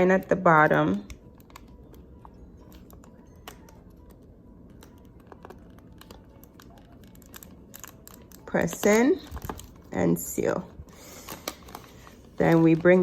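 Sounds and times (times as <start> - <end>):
glossy paper rustling: 10.6 - 13.0.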